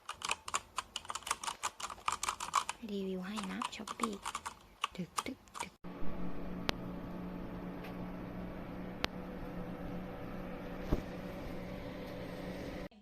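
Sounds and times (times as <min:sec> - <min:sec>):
sharp clicks: 0:00.0 - 0:05.8
electrical motor hum: 0:00.0 - 0:13.0.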